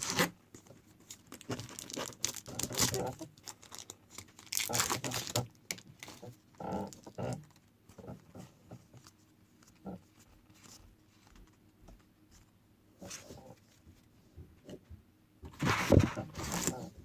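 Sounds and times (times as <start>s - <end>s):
foil wrapper crinkling: 1.0s - 6.3s.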